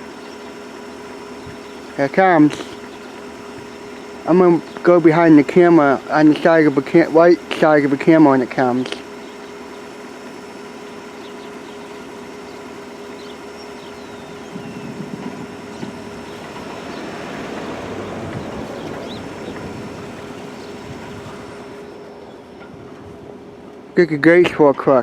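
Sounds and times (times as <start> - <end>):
steady low hum: 0.0 - 25.0
vehicle passing: 12.1 - 21.9.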